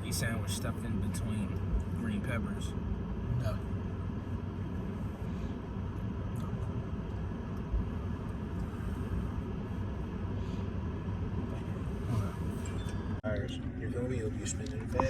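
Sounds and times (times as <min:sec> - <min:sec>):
vehicle engine rumble: 0:00.0 - 0:15.0.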